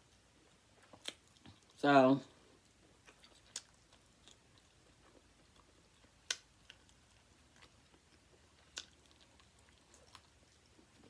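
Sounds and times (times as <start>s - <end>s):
chewing and mouth sounds: 0.4s - 1.8s, 2.6s - 11.0s.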